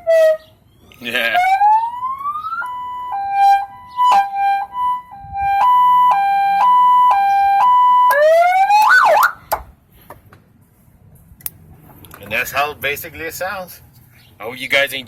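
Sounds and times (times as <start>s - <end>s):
electronic car siren: 0.0s - 9.4s.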